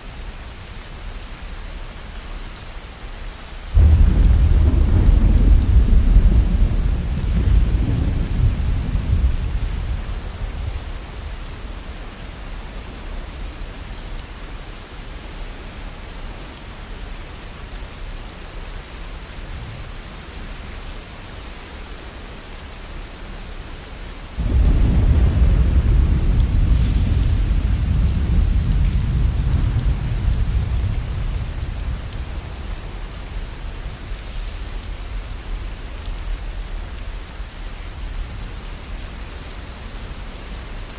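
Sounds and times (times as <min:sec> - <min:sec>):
heavy rain falling: 0:00.0 - 0:40.9
thunderclap: 0:03.8 - 0:10.8, 0:24.4 - 0:34.4
thunder rumbling: 0:03.8 - 0:11.4, 0:24.4 - 0:35.6.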